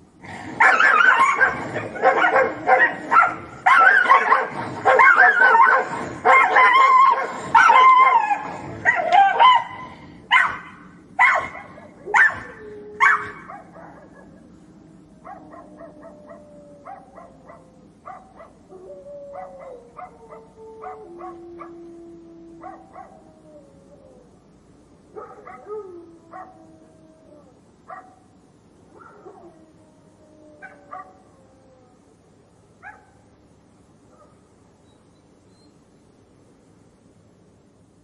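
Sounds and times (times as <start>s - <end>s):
dogs snarling and barking: 0.3s - 14.5s.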